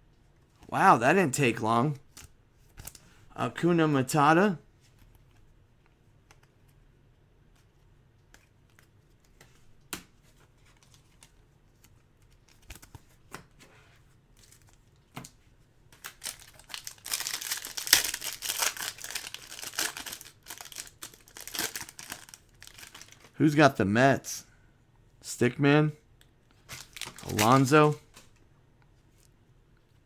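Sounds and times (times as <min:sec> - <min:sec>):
cards being handled: 0:16.0 - 0:23.4, 0:26.5 - 0:28.4
foil wrapper crinkling and tearing: 0:16.0 - 0:23.4, 0:26.6 - 0:28.3.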